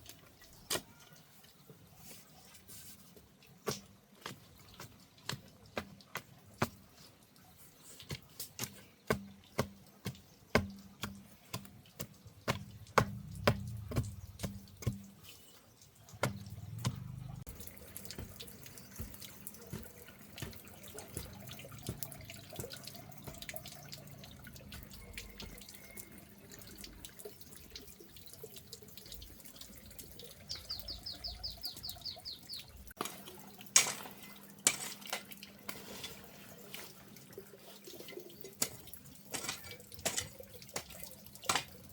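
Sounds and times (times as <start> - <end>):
clicks and drips: 0.0 - 41.9
water running from a tap: 8.0 - 35.8.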